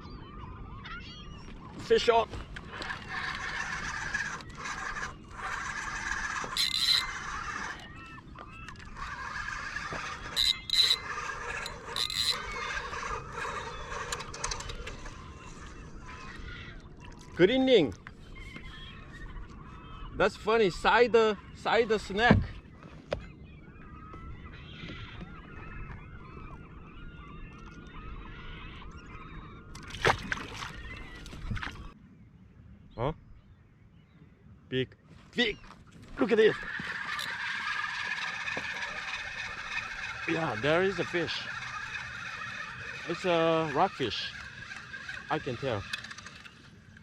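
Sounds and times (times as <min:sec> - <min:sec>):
flock of birds calling: 0:00.0 - 0:32.0, 0:35.2 - 0:47.0
fishing reel squealing: 0:01.9 - 0:17.3, 0:35.9 - 0:47.0
fishing reel whirring: 0:02.4 - 0:16.8, 0:36.0 - 0:47.0.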